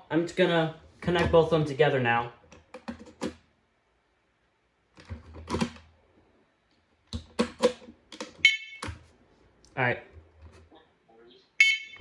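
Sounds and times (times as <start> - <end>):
plastic clicks and knocks: 2.4 - 3.4, 5.0 - 5.9, 7.1 - 9.1
high electronic beep: 11.6 - 12.0.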